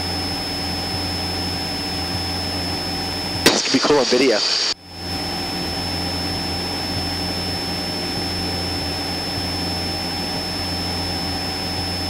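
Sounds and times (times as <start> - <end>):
aircraft engine and propeller droning: 0.0 - 3.4, 4.0 - 12.0
thin high whine: 3.5 - 5.1.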